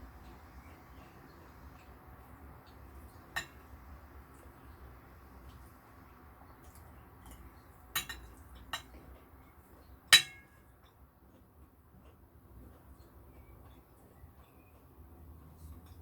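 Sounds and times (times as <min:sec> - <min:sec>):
utensil clinking against dishware: 0:08.0 - 0:08.9, 0:10.2 - 0:10.6.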